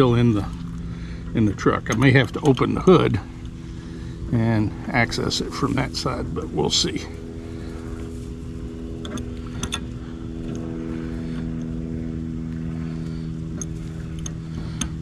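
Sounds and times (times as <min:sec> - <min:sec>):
motor hum: 0:00.0 - 0:15.0
light clicks: 0:12.5 - 0:15.0.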